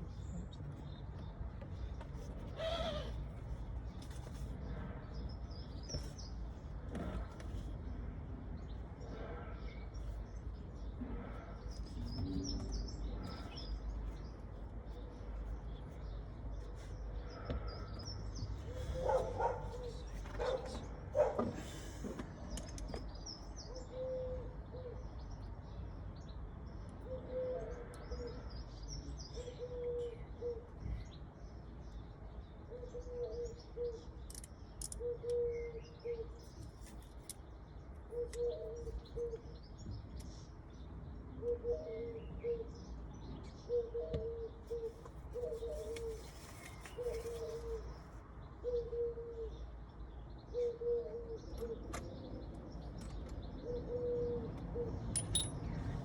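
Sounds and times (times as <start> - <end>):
birds chirping: 9.6 - 21.4.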